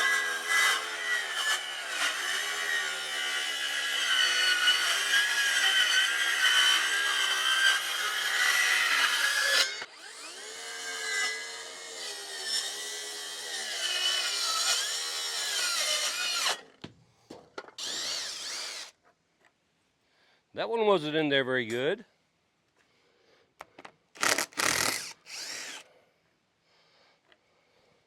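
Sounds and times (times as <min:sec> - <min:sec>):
power tool cutting wood: 0:00.0 - 0:16.6, 0:17.8 - 0:18.9, 0:24.2 - 0:25.8
power tool motor running freely: 0:17.8 - 0:18.9, 0:24.2 - 0:25.8.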